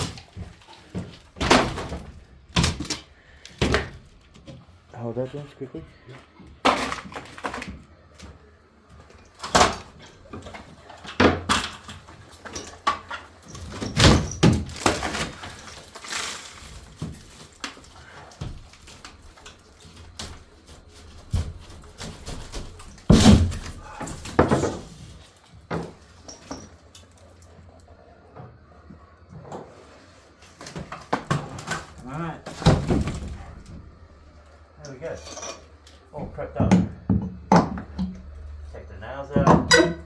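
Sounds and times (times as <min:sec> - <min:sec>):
knocks and thuds on plaster: 0:21.2 - 0:25.0, 0:36.2 - 0:38.2.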